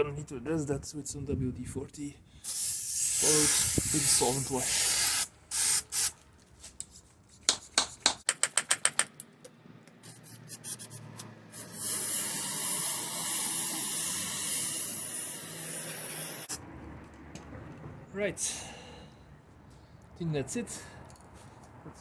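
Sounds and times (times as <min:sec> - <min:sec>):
aerosol spray can spraying: 0:02.5 - 0:06.2, 0:10.0 - 0:16.6.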